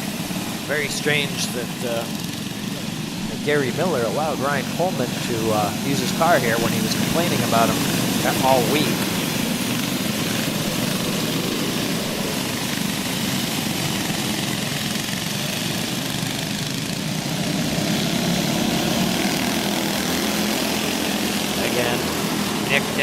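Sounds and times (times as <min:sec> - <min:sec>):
go-kart engines buzzing: 0:00.0 - 0:23.0.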